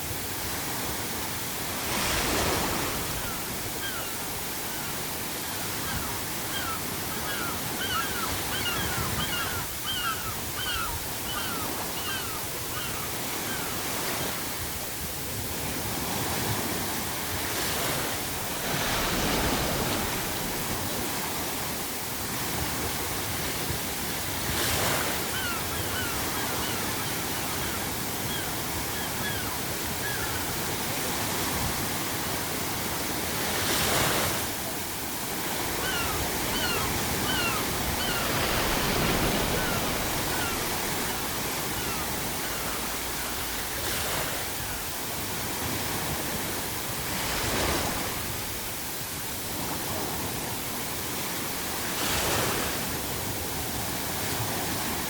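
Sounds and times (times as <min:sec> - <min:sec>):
ocean waves breaking: 0:00.0 - 0:55.0
seagulls calling: 0:02.4 - 0:14.3, 0:24.6 - 0:30.9, 0:35.4 - 0:44.9.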